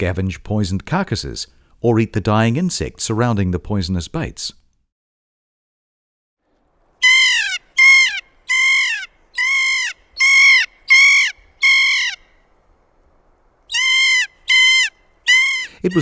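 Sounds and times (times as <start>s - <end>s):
parrot calls sliding downward: 7.0s - 12.2s, 13.7s - 16.0s.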